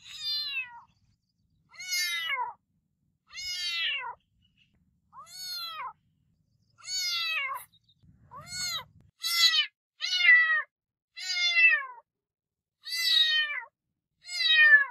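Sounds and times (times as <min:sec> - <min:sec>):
cat meowing: 0:00.0 - 0:00.9, 0:01.7 - 0:02.6, 0:03.3 - 0:04.2, 0:05.2 - 0:06.0, 0:06.8 - 0:07.7, 0:08.3 - 0:12.0, 0:12.8 - 0:14.9.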